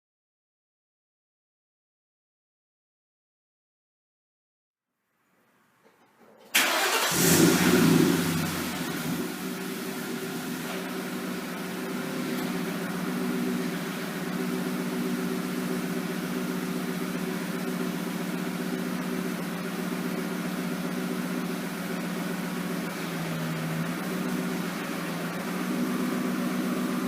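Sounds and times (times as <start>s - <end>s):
car engine idling: 6.4s - 27.0s.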